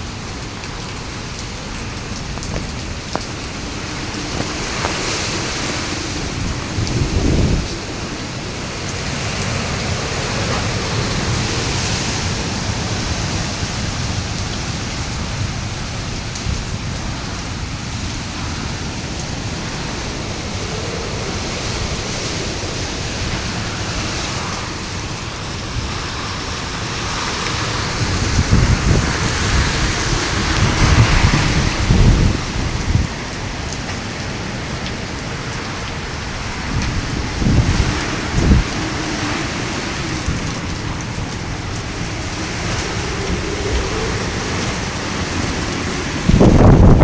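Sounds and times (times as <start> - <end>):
driving rain: 0.0 - 47.0
strong wind blowing: 0.0 - 47.0
wind gusts buffeting microphone: 0.0 - 47.0.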